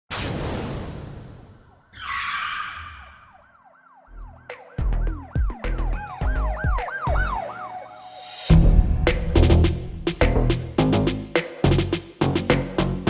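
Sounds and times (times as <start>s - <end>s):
siren wail: 1.8s - 8.5s
heavy bass beat with ticks: 4.6s - 7.4s, 8.5s - 13.0s
whoosh: 8.0s - 10.8s.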